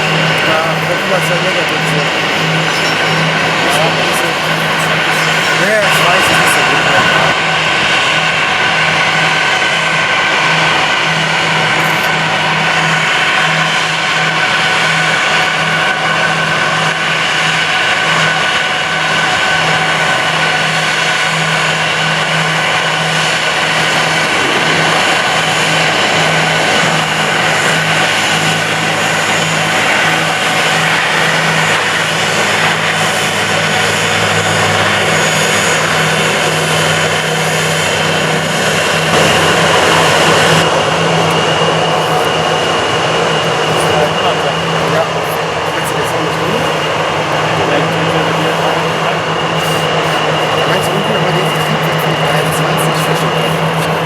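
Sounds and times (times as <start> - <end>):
jet engines whining: 0.0 - 54.0.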